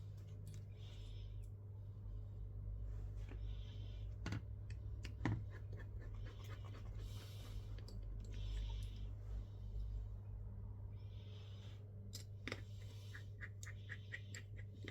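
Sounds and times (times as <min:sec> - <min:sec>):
steady low hum: 0:00.0 - 0:14.9
breathing: 0:00.6 - 0:01.6, 0:03.1 - 0:04.2, 0:06.4 - 0:10.1, 0:10.9 - 0:12.0.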